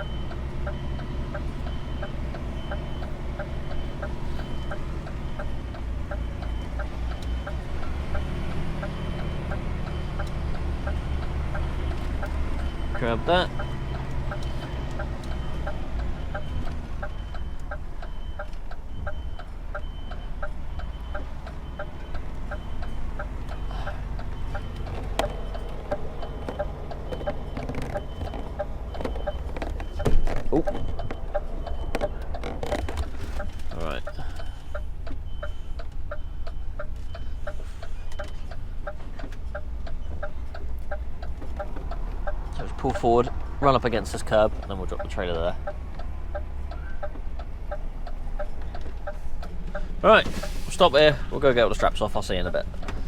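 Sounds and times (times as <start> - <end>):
reversing alarm beeps: 0.0 - 41.0
truck diesel engine running: 0.0 - 53.0
turn-signal relay ticking: 0.0 - 53.0.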